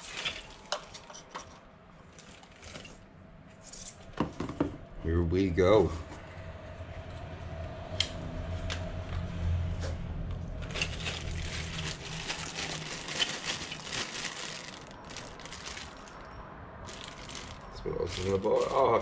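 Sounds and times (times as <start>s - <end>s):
plastic and cardboard crinkling: 0.0s - 1.2s, 10.6s - 19.0s.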